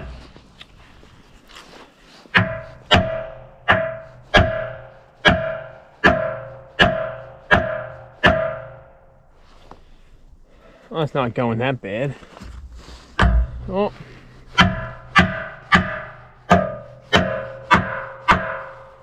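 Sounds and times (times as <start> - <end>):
hammer striking steel: 2.3 - 9.2, 13.2 - 13.8, 14.5 - 19.0.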